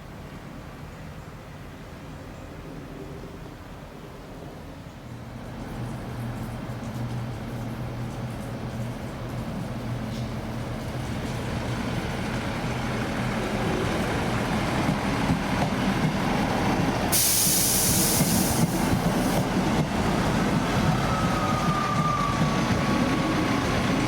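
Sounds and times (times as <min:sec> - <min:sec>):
train running past: 0:04.8 - 0:24.0
loud hiss: 0:17.1 - 0:19.6.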